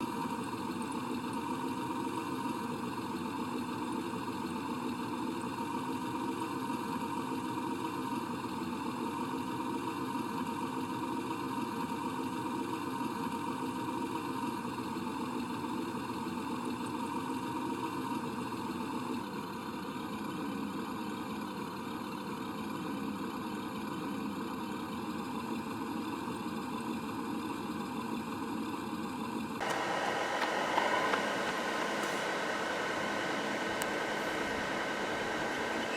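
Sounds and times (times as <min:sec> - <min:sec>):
toy truck engine idling: 0:29.6 - 0:35.9.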